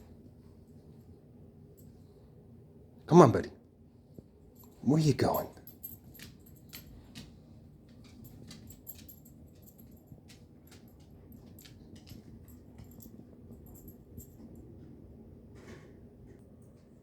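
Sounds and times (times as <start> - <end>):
dog nails clicking on floor: 4.6 - 14.6.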